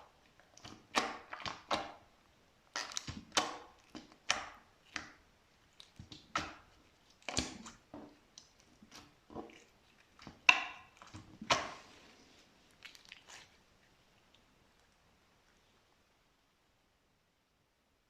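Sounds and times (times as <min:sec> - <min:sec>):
slime popping and squelching: 0:00.3 - 0:02.0, 0:02.7 - 0:11.9, 0:12.7 - 0:13.6.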